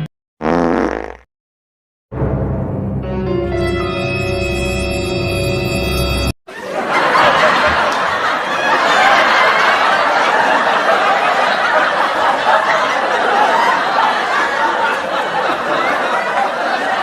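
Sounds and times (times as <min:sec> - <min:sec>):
crowd talking and laughing: 0:06.5 - 0:17.0.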